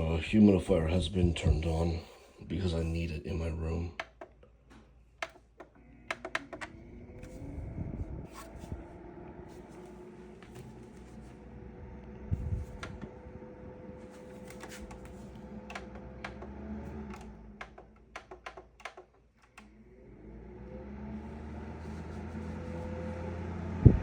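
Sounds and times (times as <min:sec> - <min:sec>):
steady low hum: 0:00.0 - 0:18.2, 0:19.5 - 0:24.0
plastic clicks and taps: 0:04.0 - 0:06.7.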